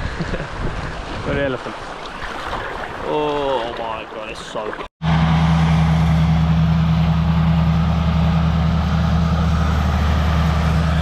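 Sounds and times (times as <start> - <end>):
motor engine humming: 5.0 - 11.0.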